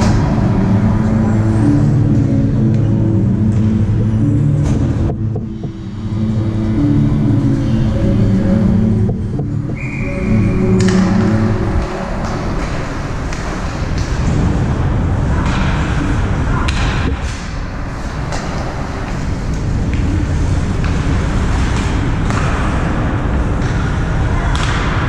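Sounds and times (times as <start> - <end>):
hockey sticks and puck clacking: 9.4 - 14.6, 15.3 - 25.0.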